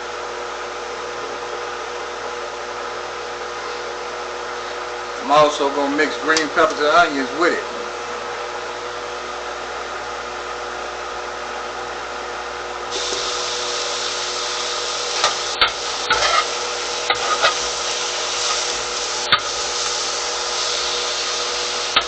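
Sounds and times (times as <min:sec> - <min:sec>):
chicken sizzling on a grill: 0:12.9 - 0:22.0
utensil scraping a grill: 0:12.9 - 0:22.0.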